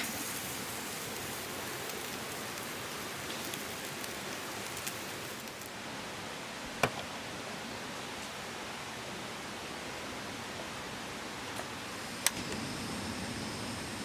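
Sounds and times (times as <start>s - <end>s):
food sizzling in a pan: 0.0s - 5.7s.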